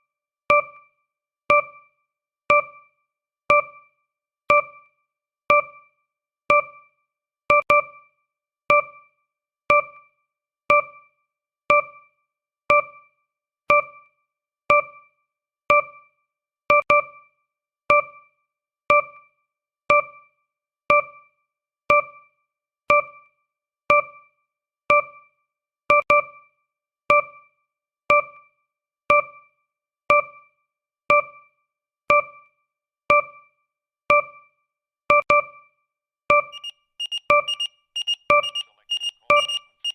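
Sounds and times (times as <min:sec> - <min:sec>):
short electronic pings: 0:36.5 - 0:39.9.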